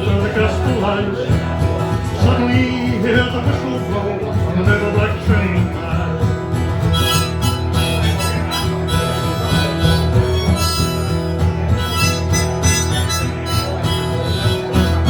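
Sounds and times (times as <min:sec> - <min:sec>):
guitar rhythm: 0:00.0 - 0:15.0
harmonica melody: 0:06.6 - 0:15.0.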